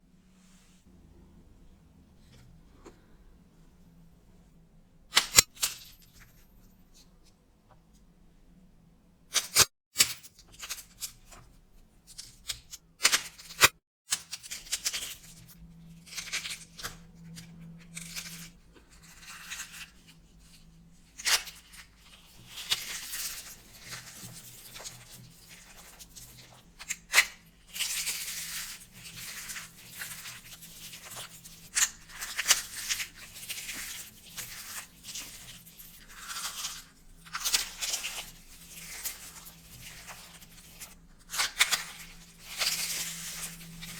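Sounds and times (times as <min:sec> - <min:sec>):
soap crunching and crumbling: 0:21.1 - 0:43.9.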